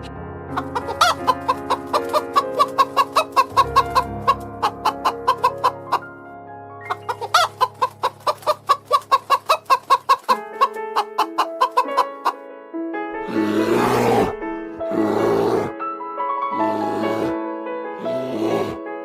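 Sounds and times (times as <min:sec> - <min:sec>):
background music: 0:00.0 - 0:19.0
chicken clucking: 0:00.5 - 0:06.0, 0:06.9 - 0:12.4.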